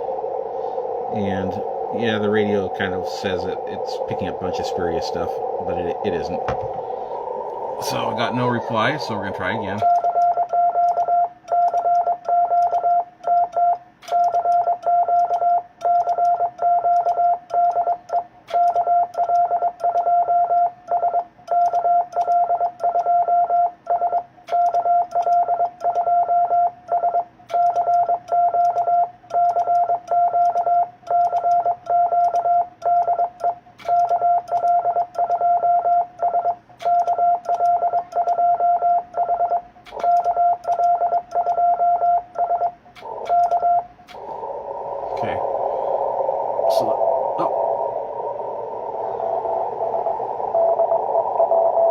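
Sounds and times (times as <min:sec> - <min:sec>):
morse code tone: 0:07.8 - 0:44.4.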